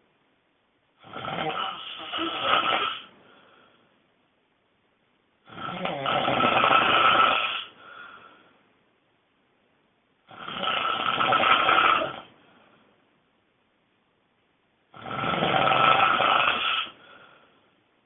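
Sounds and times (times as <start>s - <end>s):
person snoring loudly: 1.0s - 3.1s, 5.5s - 7.7s, 10.3s - 12.3s, 14.9s - 17.0s.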